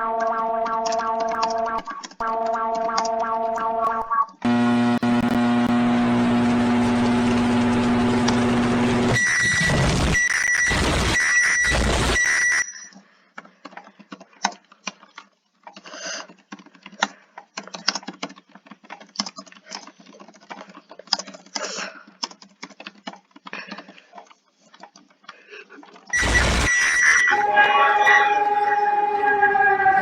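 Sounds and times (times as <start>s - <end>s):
electronic emergency alert alarm: 0.0s - 12.9s, 26.2s - 30.0s.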